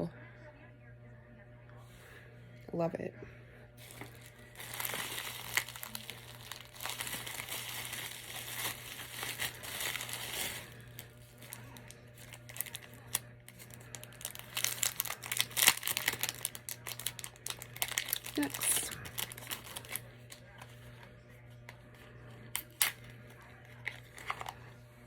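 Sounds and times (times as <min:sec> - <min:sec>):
packet crinkling and tearing: 0:03.8 - 0:20.4, 0:22.5 - 0:23.1, 0:23.7 - 0:24.6.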